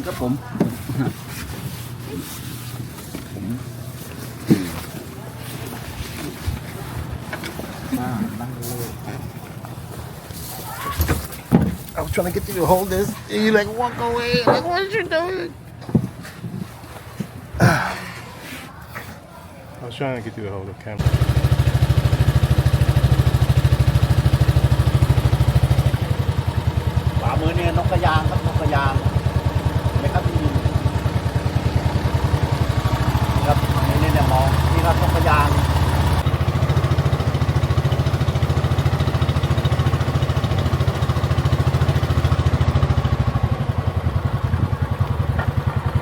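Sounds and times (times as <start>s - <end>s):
boat engine thudding: 10.9s - 17.8s, 21.0s - 46.0s.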